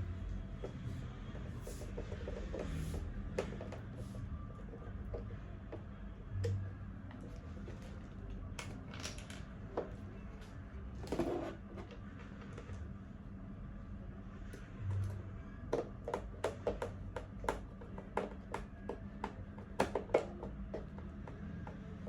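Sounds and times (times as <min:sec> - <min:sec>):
low steady hum: 0:00.0 - 0:22.0
plastic parts clicking and knocking: 0:08.6 - 0:10.0, 0:14.9 - 0:22.0.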